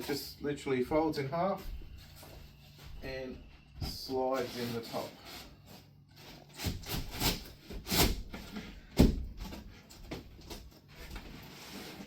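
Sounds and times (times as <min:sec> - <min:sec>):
cardboard rubbing and scraping: 0:04.2 - 0:08.9, 0:10.9 - 0:12.0.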